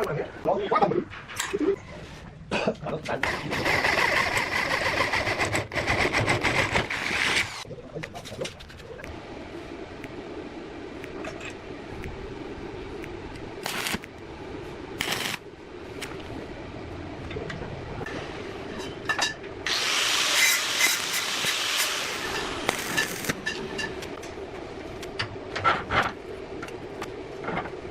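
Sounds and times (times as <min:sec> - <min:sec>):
electric drill running: 0:06.8 - 0:07.6, 0:19.7 - 0:23.4
drill bit cutting into metal: 0:19.7 - 0:23.4.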